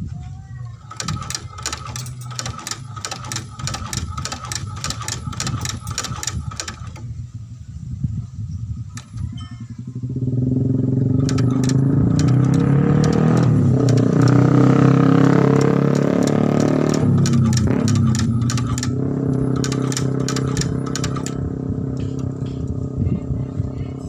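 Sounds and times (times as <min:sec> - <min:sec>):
motor engine running: 0:00.6 - 0:07.2, 0:08.8 - 0:24.0
rapid sharp clicking: 0:00.8 - 0:07.1, 0:11.2 - 0:14.8, 0:15.4 - 0:21.4.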